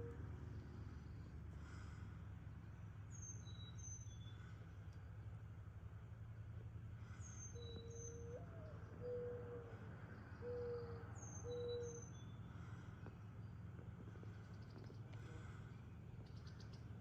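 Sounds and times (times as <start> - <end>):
mourning dove cooing: 0.0 - 1.0, 7.6 - 12.0.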